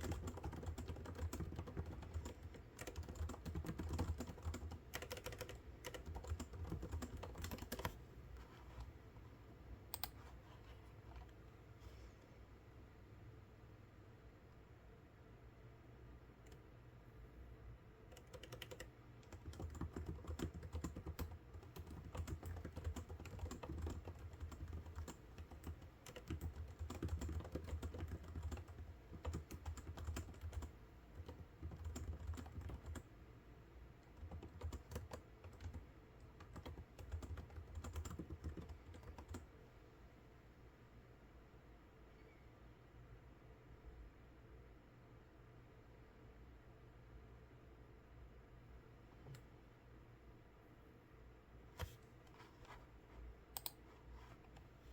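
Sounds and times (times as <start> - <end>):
keyboard keys clicking: 0.0 - 8.0, 18.1 - 33.0, 34.1 - 35.8, 36.4 - 39.4, 53.6 - 53.8.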